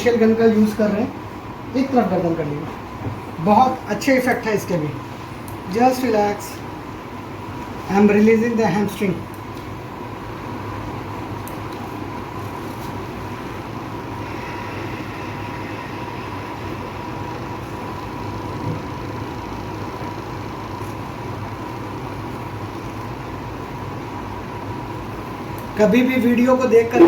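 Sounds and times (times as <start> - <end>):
massage gun motor hum: 14.2 - 20.8.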